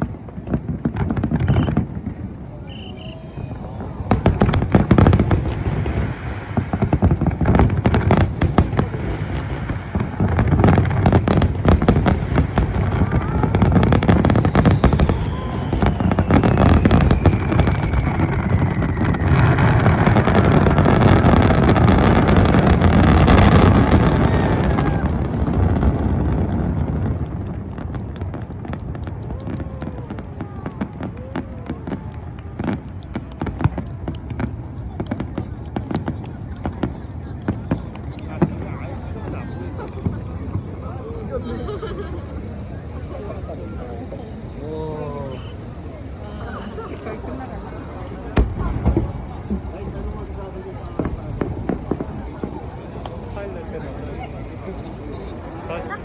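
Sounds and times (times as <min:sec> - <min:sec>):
firework bangs: 0:00.0 - 0:44.6, 0:45.2 - 0:56.0
fireworks crackling: 0:00.0 - 0:56.0
falling firework whistle: 0:01.2 - 0:05.6, 0:12.3 - 0:26.0, 0:45.0 - 0:45.8.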